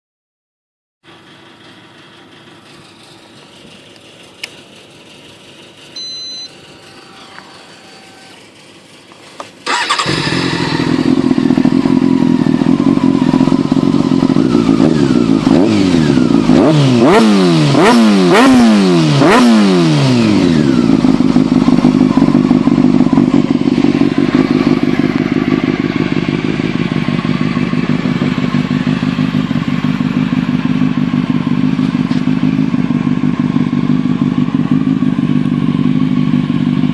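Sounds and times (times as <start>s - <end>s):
motorcycle engine starting and revving: 1.1s - 36.9s
short beep: 6.0s - 8.2s.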